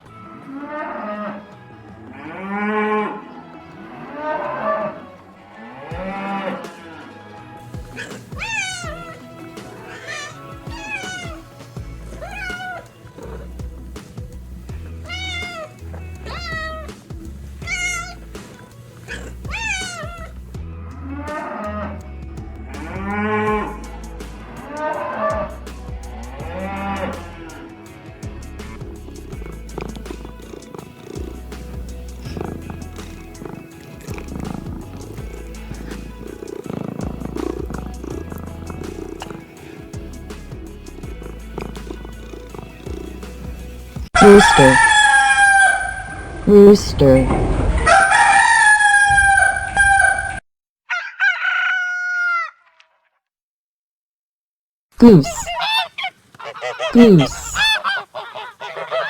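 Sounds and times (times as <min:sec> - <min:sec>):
music with low bass pulse: 0:07.6 - 0:09.5, 0:10.6 - 0:12.6, 0:13.2 - 0:44.2
cat meowing: 0:08.4 - 0:09.2, 0:12.2 - 0:12.8, 0:15.0 - 0:15.7, 0:16.3 - 0:16.9, 0:17.7 - 0:18.2, 0:19.2 - 0:20.3.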